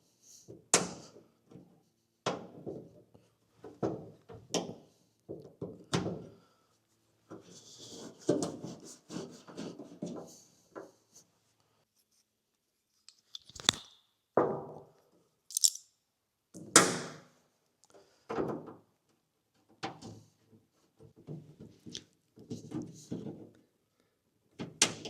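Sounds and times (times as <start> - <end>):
metal parts clicking and clunking: 15.5 - 15.8.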